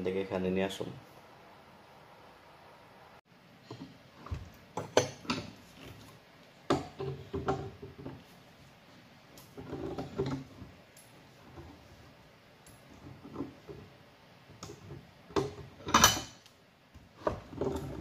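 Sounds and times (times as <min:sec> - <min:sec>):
plastic pipe knocks and clatters: 0:06.7 - 0:08.2.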